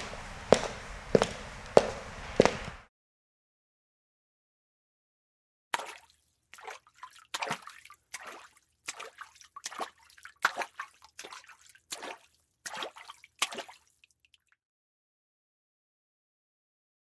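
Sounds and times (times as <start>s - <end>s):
footsteps walking: 0.0s - 2.9s.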